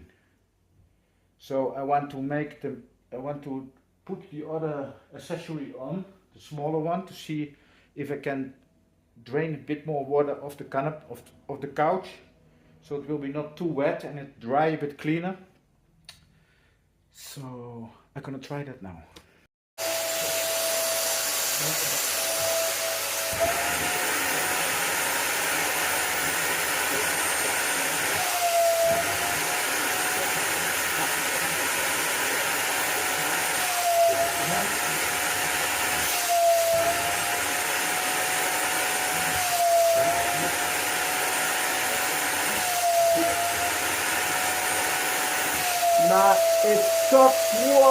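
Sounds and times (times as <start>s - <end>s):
wet vacuum cleaner running: 19.8s - 47.9s.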